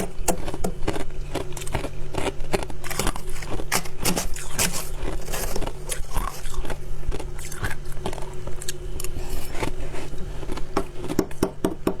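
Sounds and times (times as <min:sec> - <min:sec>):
crunching ice while chewing: 0:00.0 - 0:11.4.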